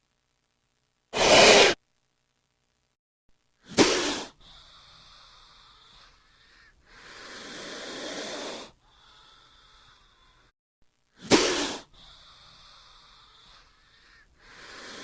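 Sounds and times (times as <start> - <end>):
snake hissing: 1.2 - 1.8, 3.7 - 10.4, 11.2 - 15.0.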